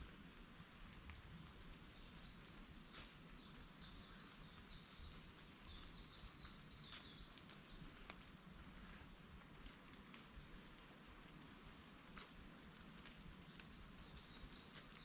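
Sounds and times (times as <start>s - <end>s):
rain falling in a forest: 0.0s - 15.0s
songbird chirping: 1.5s - 8.2s, 13.3s - 15.0s.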